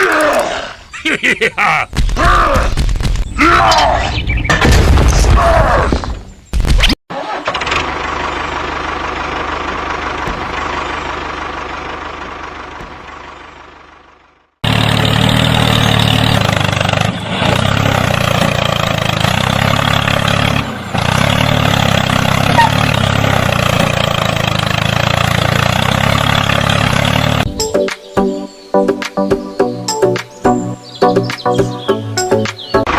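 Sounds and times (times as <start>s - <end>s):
engine running: 7.2s - 27.7s.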